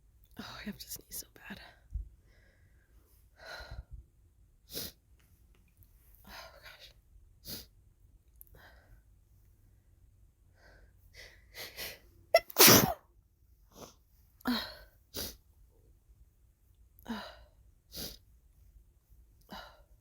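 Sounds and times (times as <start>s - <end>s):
woman sneezing: 12.4s - 13.0s.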